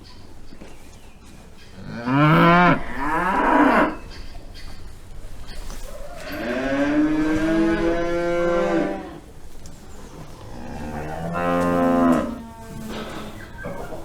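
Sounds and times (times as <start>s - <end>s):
cow mooing: 1.8s - 4.1s, 6.1s - 9.4s, 10.3s - 13.9s.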